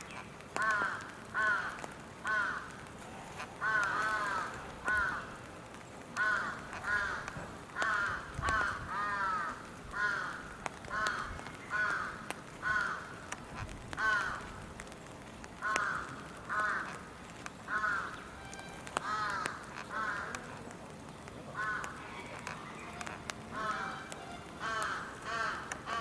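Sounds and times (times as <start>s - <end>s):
crow cawing: 0.6s - 2.8s, 3.6s - 5.4s, 6.2s - 13.2s, 14.0s - 14.5s, 15.6s - 17.0s, 17.7s - 18.2s, 19.0s - 20.5s, 21.6s - 22.0s, 23.5s - 26.0s.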